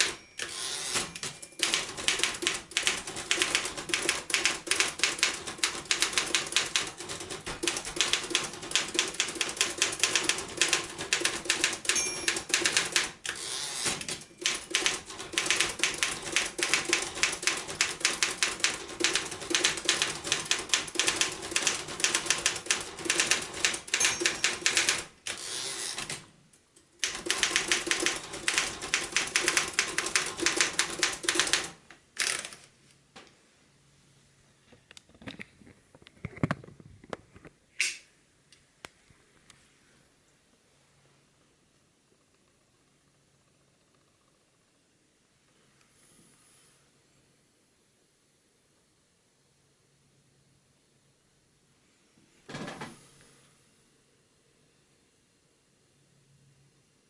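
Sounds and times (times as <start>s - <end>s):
typewriter key strikes: 0.0s - 25.1s.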